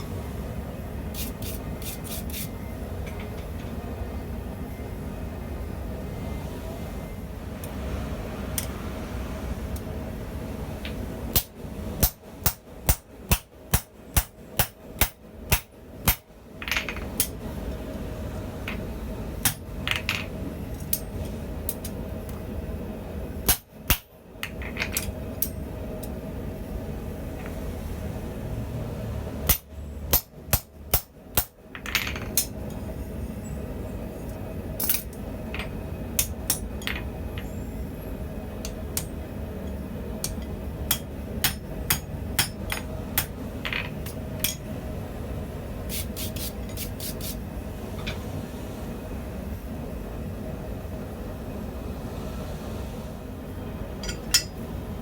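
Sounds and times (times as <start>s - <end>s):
hammer striking hot steel: 11.3s - 16.3s, 19.4s - 19.8s, 23.4s - 24.2s, 29.4s - 31.6s, 36.2s - 37.0s, 40.2s - 43.4s, 54.0s - 54.6s.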